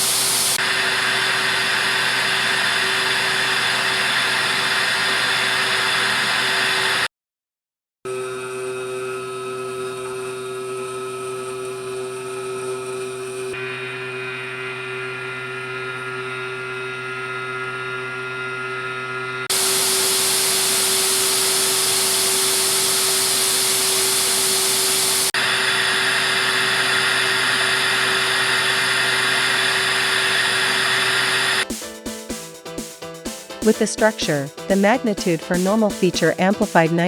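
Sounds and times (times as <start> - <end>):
hissing machining noise: 0.0 - 7.0, 19.5 - 31.6
machine tool humming: 0.0 - 7.1, 13.5 - 31.7.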